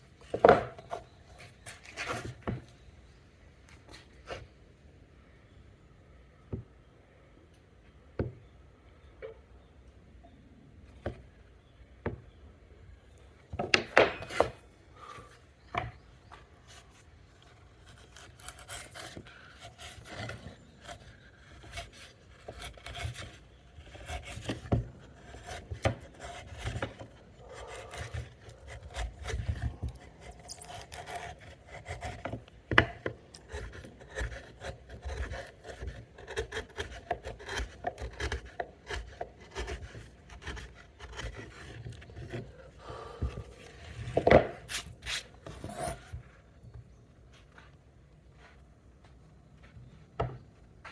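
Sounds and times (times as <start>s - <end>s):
chisel scraping and shaving wood: 0.2s - 2.9s, 13.6s - 46.8s
chisel knocks on wood: 13.6s - 14.6s.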